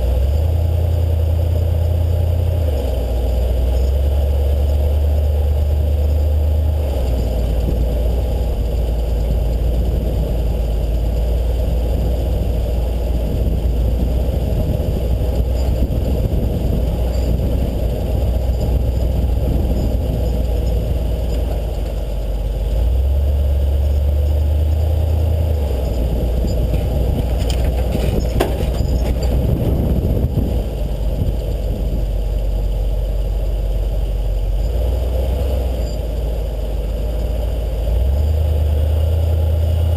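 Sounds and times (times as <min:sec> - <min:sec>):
road and drivetrain noise: 0:00.0 - 0:39.9
vehicle engine rumbling: 0:00.0 - 0:39.9
sharp knocks and rattles: 0:25.8 - 0:30.4.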